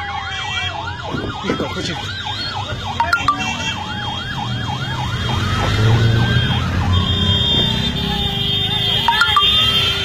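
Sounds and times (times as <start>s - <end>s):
emergency siren: 0.0s - 10.0s.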